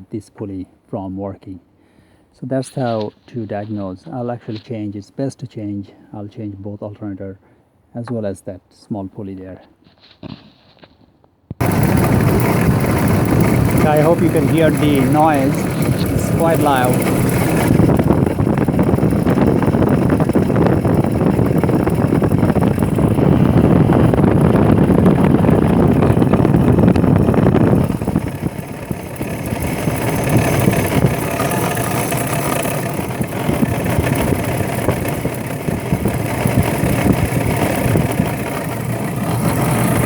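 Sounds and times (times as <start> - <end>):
alternator knocking: 11.6 - 40.0
engine running: 11.6 - 40.0.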